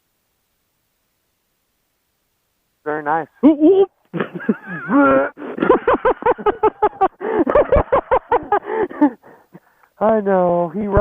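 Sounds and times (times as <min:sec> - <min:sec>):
people laughing: 0:04.1 - 0:09.3.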